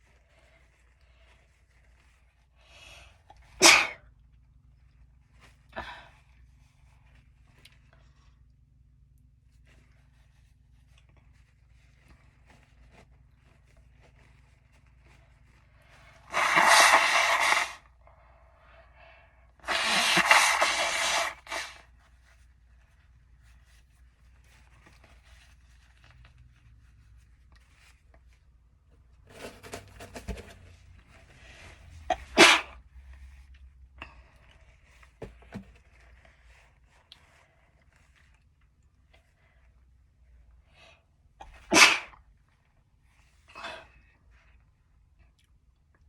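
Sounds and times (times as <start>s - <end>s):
person sneezing: 3.6s - 4.1s, 16.3s - 17.8s, 19.6s - 21.8s, 32.1s - 32.8s, 41.4s - 42.2s
breaths and sniffs: 15.2s - 21.9s.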